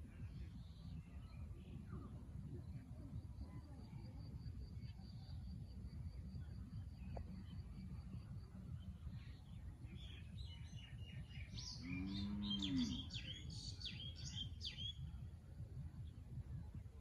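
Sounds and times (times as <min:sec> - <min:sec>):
low steady rumble: 0:00.0 - 0:17.0
small birds chirping: 0:06.2 - 0:15.3.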